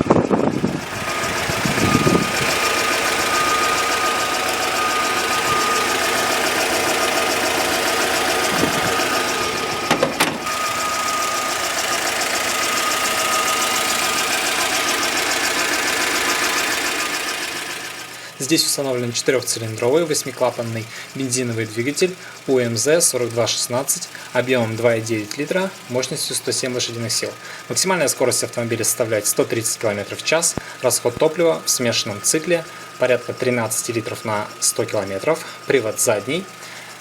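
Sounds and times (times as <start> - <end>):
petrol engine idling: 0.0 - 37.0
steady high whine: 0.0 - 37.0.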